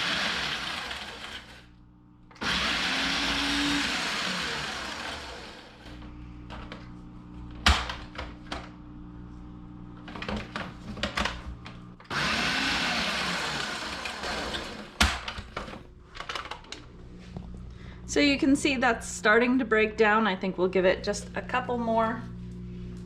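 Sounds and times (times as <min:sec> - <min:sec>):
blender chopping: 0:00.0 - 0:06.0, 0:12.0 - 0:15.3
blender stopping thunk: 0:02.3 - 0:06.0, 0:12.0 - 0:15.7.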